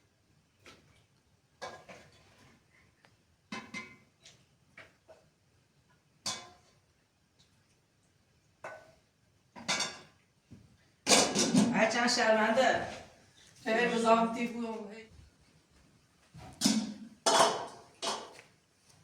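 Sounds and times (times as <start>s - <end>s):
objects knocking and clattering: 1.6s - 2.5s, 3.5s - 5.2s, 6.2s - 6.8s, 9.6s - 11.9s, 16.4s - 18.6s.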